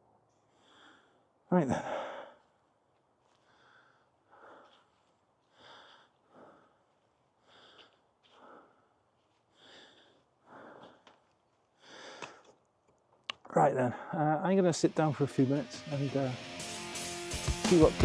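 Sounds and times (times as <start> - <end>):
person breathing through nose: 3.4 - 11.0, 11.8 - 12.5.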